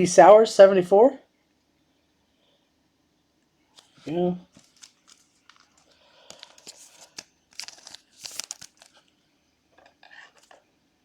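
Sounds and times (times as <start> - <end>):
plastic sleeves crinkling: 3.8 - 9.1, 9.7 - 10.6.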